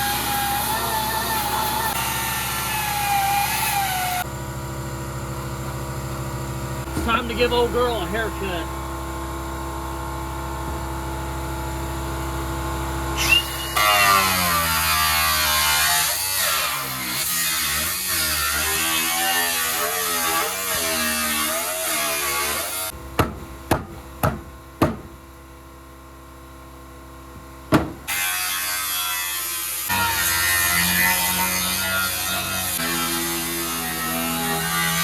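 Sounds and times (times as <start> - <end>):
power tool cutting sheet metal: 0.0 - 4.3, 13.2 - 23.0, 28.1 - 35.0
sharp knocks: 23.2 - 25.2, 27.7 - 28.1.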